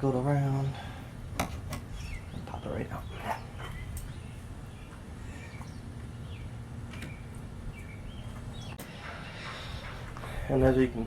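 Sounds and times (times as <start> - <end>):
low outdoor rumble: 0.0 - 11.0.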